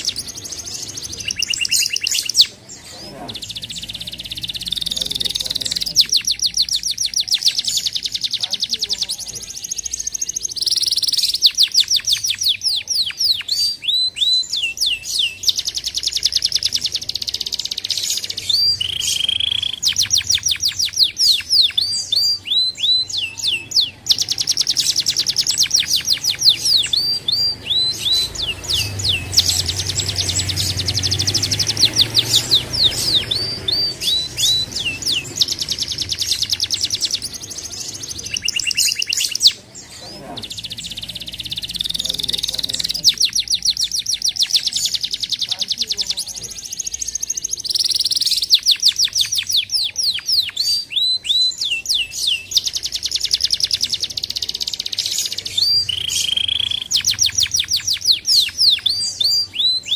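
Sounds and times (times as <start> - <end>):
canary singing trills: 0.0 - 59.9.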